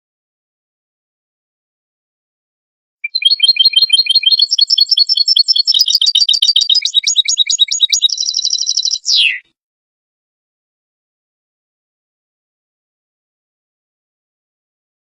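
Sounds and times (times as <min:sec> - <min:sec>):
finch singing twittering chirps: 0:03.0 - 0:09.4.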